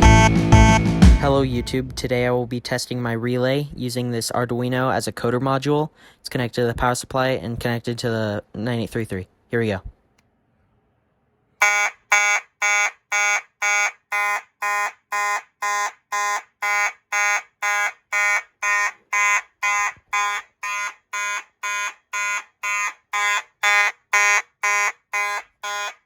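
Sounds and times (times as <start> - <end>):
pulsed fire alarm horn: 11.6 - 26.0.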